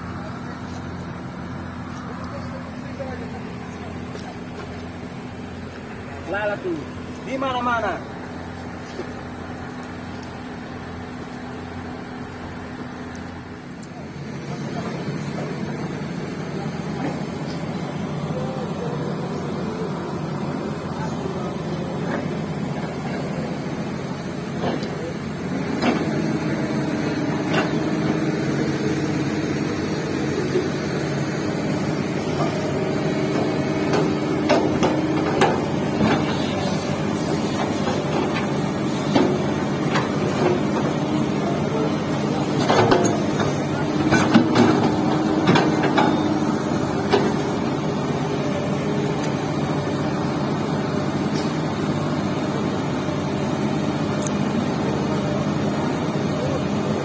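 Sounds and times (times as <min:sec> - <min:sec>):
excavator diesel engine running: 0:00.0 - 0:57.0
sharp knocks and clanks: 0:33.3 - 0:36.4, 0:42.6 - 0:46.4.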